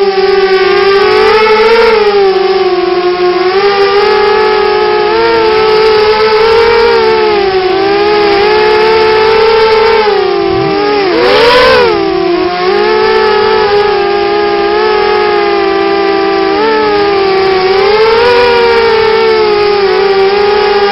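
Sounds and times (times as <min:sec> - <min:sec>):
drone propellers whining: 0:00.0 - 0:20.9
rushing noise burst: 0:10.3 - 0:12.8.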